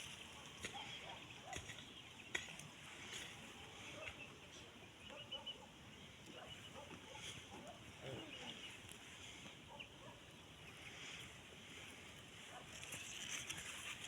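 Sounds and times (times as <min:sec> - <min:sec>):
faint farm fowl calls: 0:03.7 - 0:10.2.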